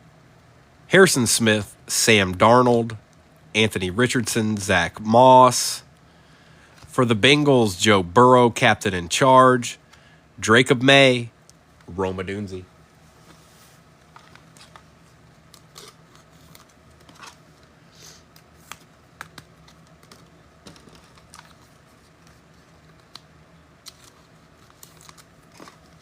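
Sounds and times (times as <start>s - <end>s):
faint steady hum: 0.0s - 26.0s
hands handling trading cards: 14.0s - 26.0s.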